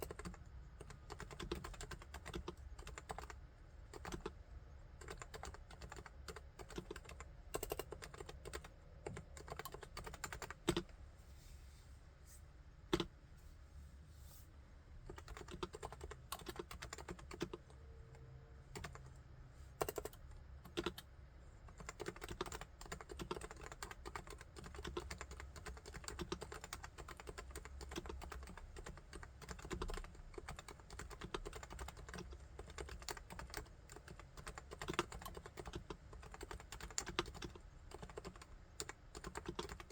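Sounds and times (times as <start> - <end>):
typing on keyboard: 0.0 - 4.4, 5.0 - 10.9, 15.1 - 19.1, 19.8 - 21.1, 21.7 - 39.9.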